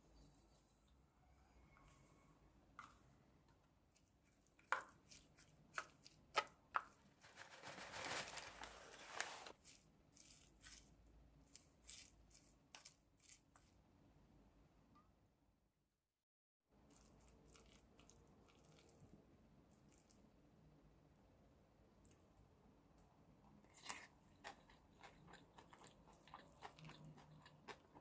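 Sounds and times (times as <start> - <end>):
tearing or rustling noise: 7.2 - 10.9.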